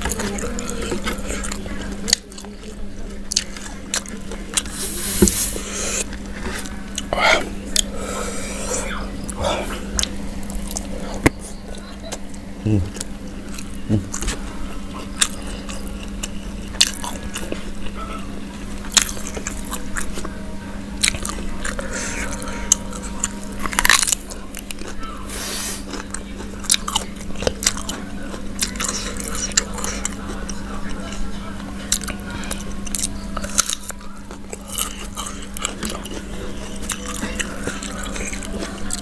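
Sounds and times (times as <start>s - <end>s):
steady low hum: 0.0s - 39.0s
crunching fried chicken bites: 21.0s - 31.2s, 31.8s - 39.0s.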